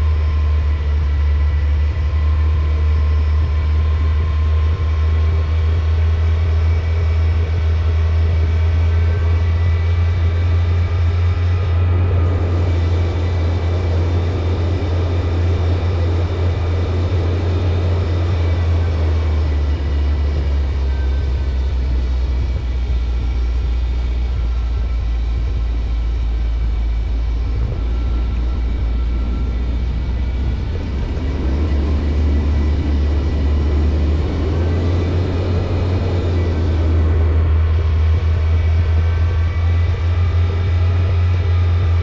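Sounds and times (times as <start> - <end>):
car engine droning: 0.0 - 42.0.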